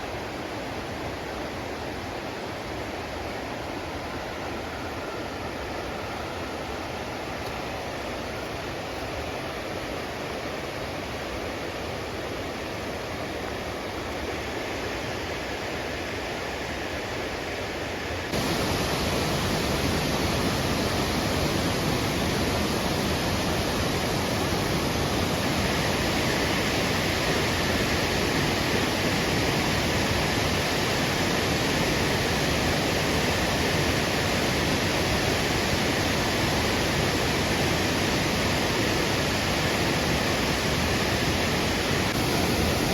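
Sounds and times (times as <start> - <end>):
waterfall rushing: 18.3 - 42.9.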